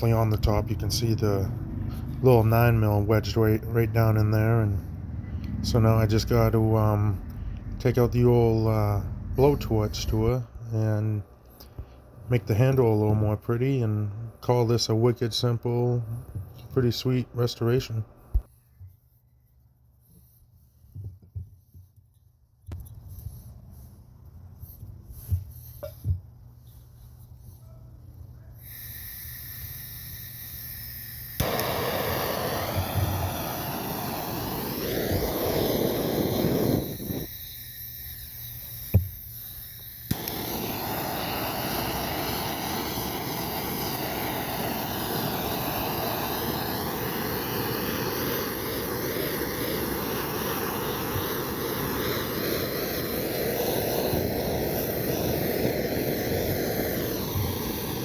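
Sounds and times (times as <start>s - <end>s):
blowtorch flame hissing: 0.0s - 4.9s, 28.6s - 58.0s.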